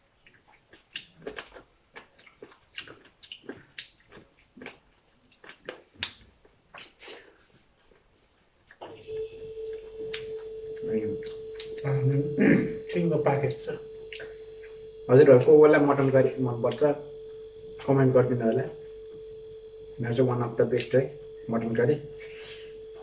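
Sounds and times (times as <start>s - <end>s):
wet chewing mouth smacks: 0.2s - 8.9s
steady hum: 8.8s - 23.0s.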